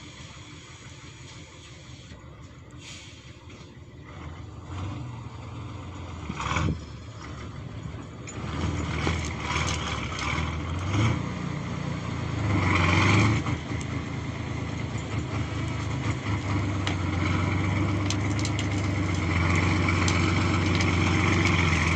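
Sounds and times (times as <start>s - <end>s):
tractor diesel engine under load: 0.0s - 21.9s.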